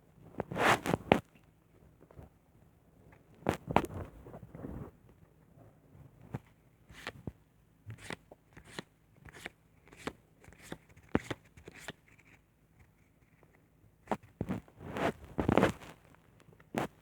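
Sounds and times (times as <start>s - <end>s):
trading cards rustling: 8.0s - 13.4s.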